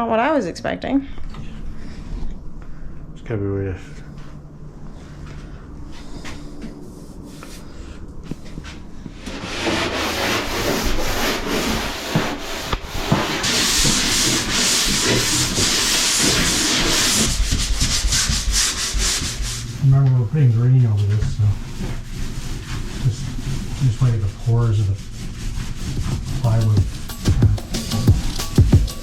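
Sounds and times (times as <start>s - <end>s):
scrubbing against plywood wall: 9.3s - 19.7s.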